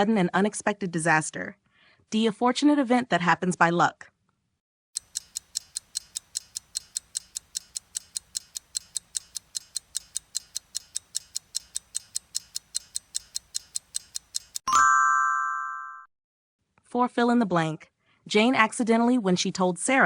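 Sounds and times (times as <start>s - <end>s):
timer ticking: 5.0s - 14.7s
timer ding: 8.0s - 16.1s.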